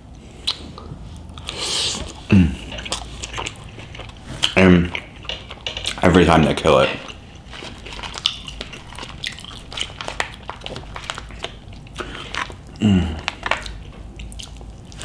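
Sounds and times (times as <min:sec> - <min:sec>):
chewing and crunching: 0:00.2 - 0:15.0
short vocal sound: 0:02.2 - 0:02.8.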